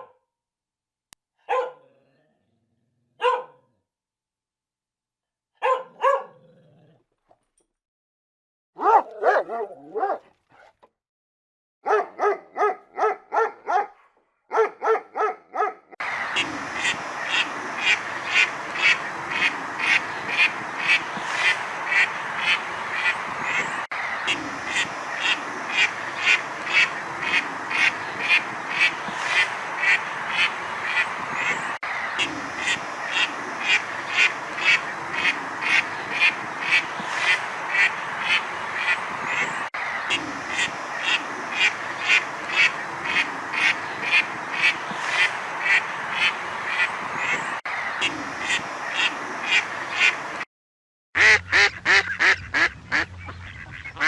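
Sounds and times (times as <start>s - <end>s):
ducks quacking: 8.8s - 10.2s, 14.5s - 50.4s, 51.2s - 54.0s.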